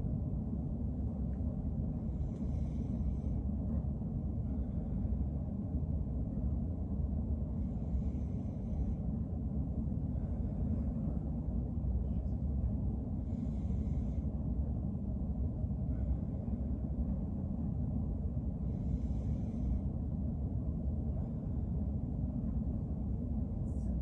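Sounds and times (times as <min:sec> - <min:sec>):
steady low rumble: 0:00.0 - 0:24.0
person breathing slowly: 0:02.0 - 0:03.6, 0:07.5 - 0:09.3, 0:13.2 - 0:14.5, 0:18.5 - 0:20.1.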